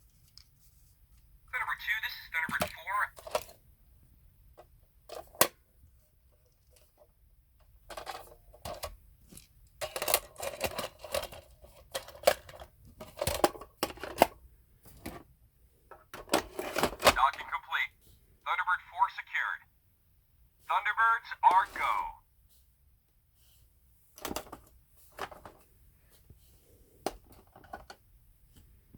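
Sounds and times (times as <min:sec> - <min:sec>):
plastic toy clicking and clattering: 0:02.5 - 0:03.6, 0:07.9 - 0:14.4, 0:16.0 - 0:17.2, 0:27.1 - 0:28.0.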